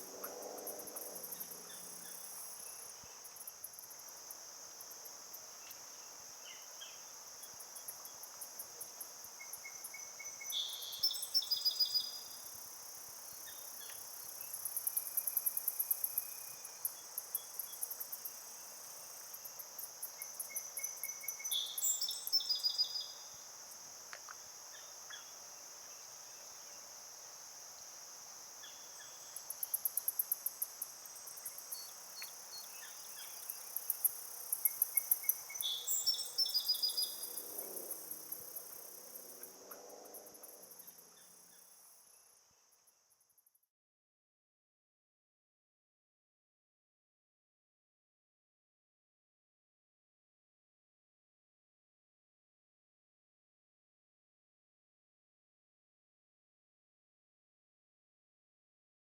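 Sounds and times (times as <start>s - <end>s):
insects buzzing: 0.0s - 42.9s.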